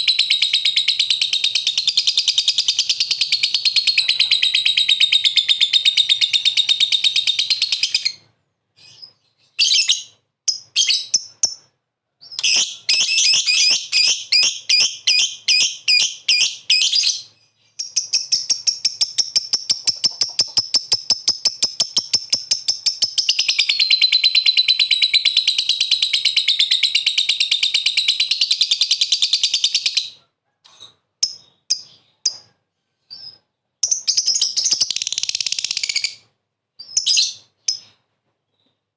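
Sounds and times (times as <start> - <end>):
lovebird chattering trills: 17.8 - 25.5.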